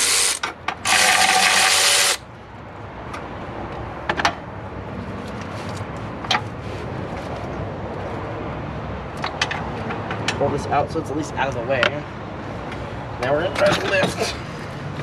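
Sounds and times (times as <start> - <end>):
ratchet turning a bolt: 0.0 - 2.2.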